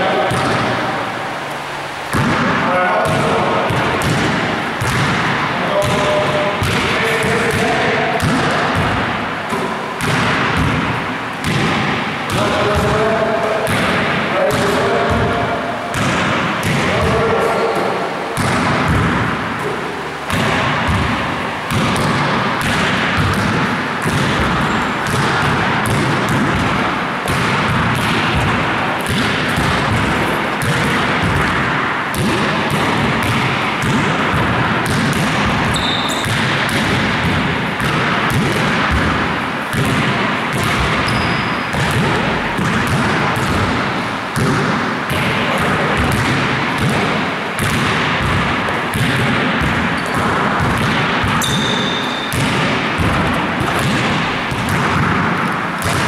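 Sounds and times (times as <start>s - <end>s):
basketballs bouncing: 0.0s - 1.2s, 1.9s - 56.0s
shoe squeaks: 24.6s - 25.0s, 35.6s - 36.4s, 41.0s - 41.7s, 51.4s - 52.3s.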